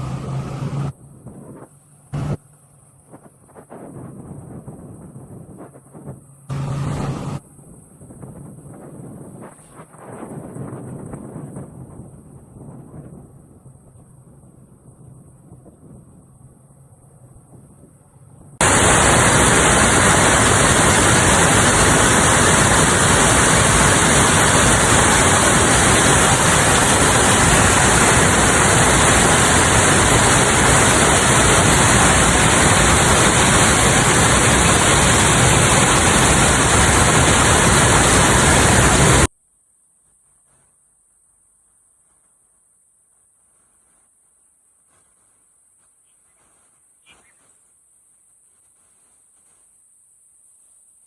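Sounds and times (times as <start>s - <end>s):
loud steady rushing noise: 2.1s - 2.4s, 6.4s - 7.4s, 18.6s - 39.3s.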